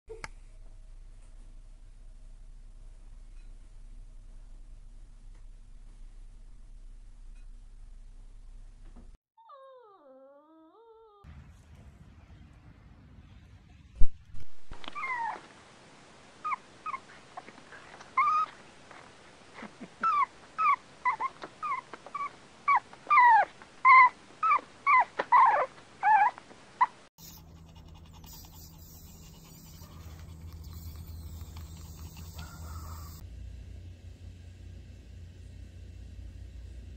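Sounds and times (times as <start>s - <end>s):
steady low hum: 0.1s - 9.2s, 27.2s - 36.9s
puppy whimpering and yelping: 9.4s - 11.3s, 14.7s - 15.5s, 16.4s - 18.6s, 19.6s - 33.2s.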